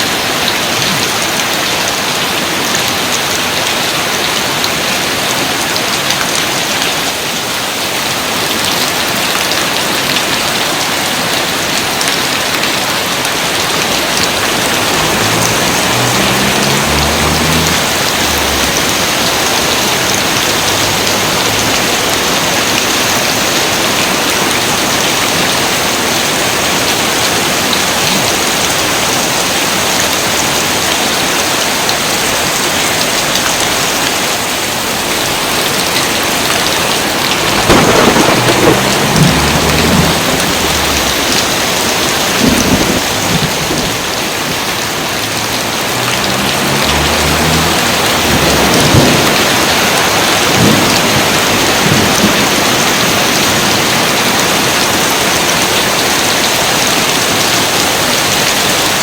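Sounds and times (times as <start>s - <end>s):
heavy rain hissing: 0.0s - 59.0s
thunder rumbling: 13.4s - 24.8s, 36.2s - 53.9s
thunderclap: 13.8s - 23.2s, 37.0s - 44.2s, 46.2s - 53.6s.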